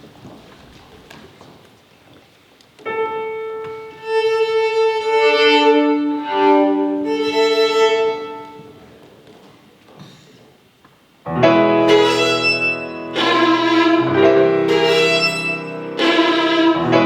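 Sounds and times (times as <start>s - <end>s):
piano accompaniment: 2.8s - 8.9s, 11.2s - 17.0s
violin long held notes: 3.2s - 8.8s, 11.8s - 17.0s.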